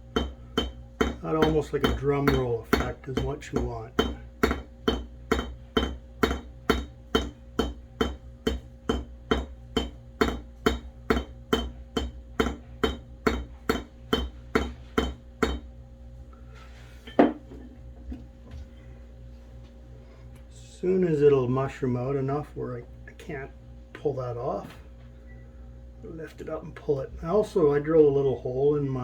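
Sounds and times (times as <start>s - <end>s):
hammer tapping on anvil: 0.1s - 15.7s.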